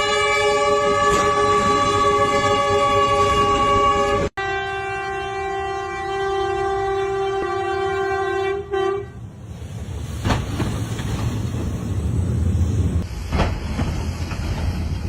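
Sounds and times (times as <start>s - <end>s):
train horn long note: 0.0s - 9.4s
train rumbling past: 0.0s - 15.0s.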